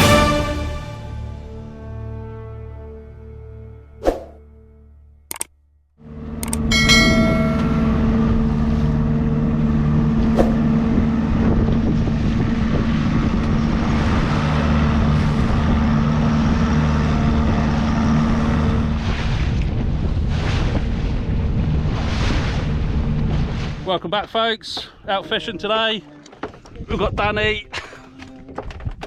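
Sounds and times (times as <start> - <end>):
boat engine humming: 0.0 - 29.0
ringing tone: 6.4 - 8.8.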